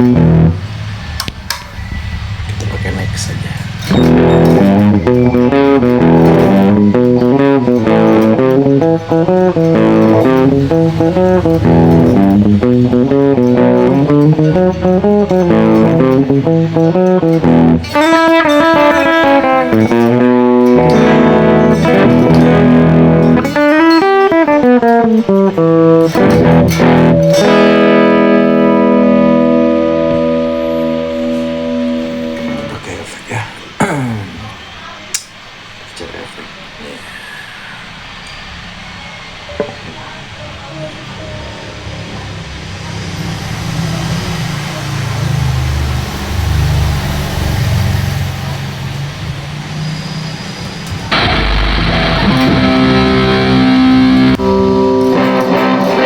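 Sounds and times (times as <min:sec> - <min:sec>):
guitar melodic picking: 0:00.0 - 0:01.8, 0:03.6 - 0:33.9, 0:50.8 - 0:56.0.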